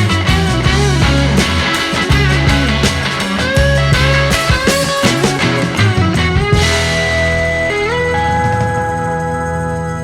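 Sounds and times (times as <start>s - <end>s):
rock music with electric guitar: 0.0s - 10.0s.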